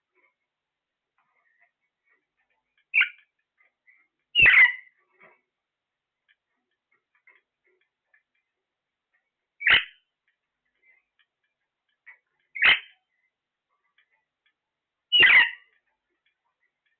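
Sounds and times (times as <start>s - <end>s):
soft chirps: 1.3s - 5.4s
parrot squawking: 4.4s - 4.9s, 9.6s - 10.0s, 12.6s - 13.0s, 15.1s - 15.7s.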